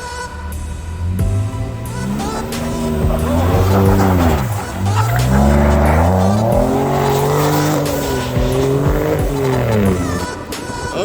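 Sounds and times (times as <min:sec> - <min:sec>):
car engine revving hard: 0:00.0 - 0:10.9.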